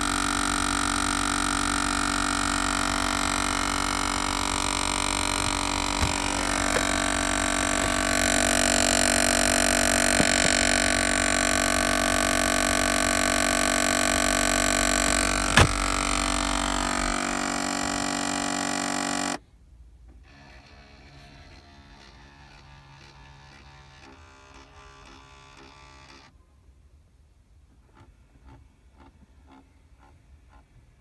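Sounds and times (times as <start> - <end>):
car droning hum: 0.0 - 19.4.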